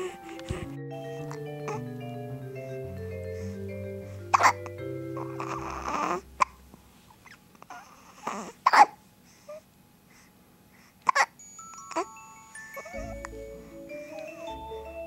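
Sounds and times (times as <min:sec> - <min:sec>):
baby hiccupping: 0:00.0 - 0:00.8, 0:04.3 - 0:06.6, 0:07.3 - 0:09.0
music: 0:00.0 - 0:06.5, 0:11.4 - 0:15.0.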